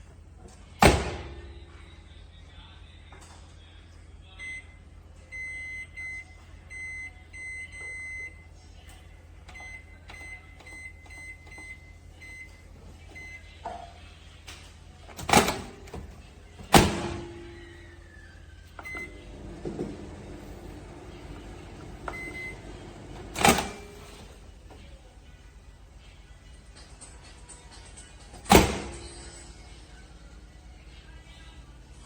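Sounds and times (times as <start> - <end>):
microwave button beeps: 5.3 - 8.4, 9.5 - 12.6, 18.8 - 24.2.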